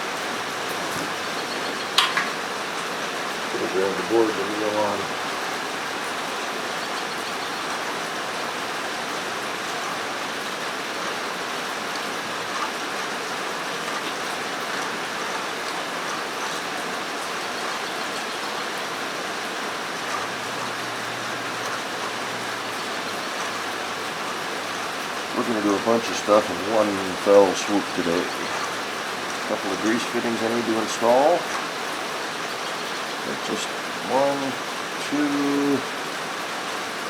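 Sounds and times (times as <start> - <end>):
rain on a metal roof: 0.0 - 37.0.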